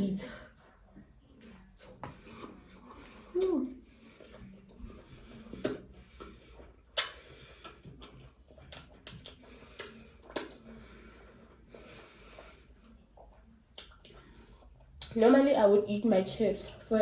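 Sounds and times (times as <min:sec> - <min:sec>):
wet mouth clicks and smacks chewing: 0:04.2 - 0:10.9, 0:12.4 - 0:15.2.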